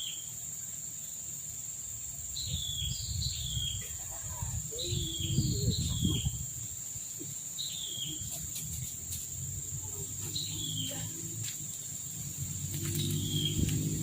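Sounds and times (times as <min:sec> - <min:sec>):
high-pitched insect drone: 0:00.0 - 0:14.0
bird whistled call: 0:12.9 - 0:13.7.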